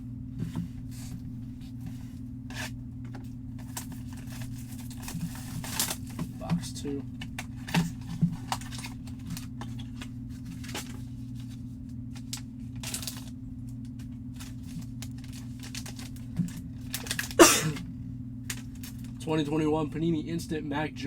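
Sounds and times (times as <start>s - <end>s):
low electrical hum: 0.0s - 21.0s
packaging rustling: 1.8s - 17.8s, 18.4s - 19.2s.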